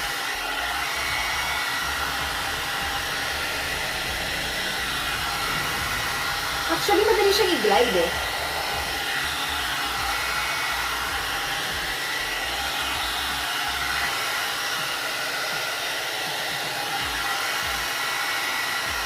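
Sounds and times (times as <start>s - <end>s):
motor whine: 0.0s - 15.1s
hair dryer blowing: 0.0s - 19.0s
low rumbles: 1.3s - 10.3s.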